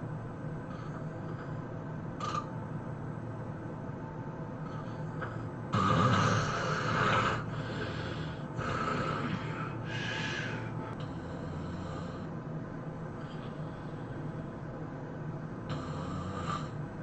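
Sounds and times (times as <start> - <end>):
person snoring: 4.7 - 12.3, 15.7 - 16.8.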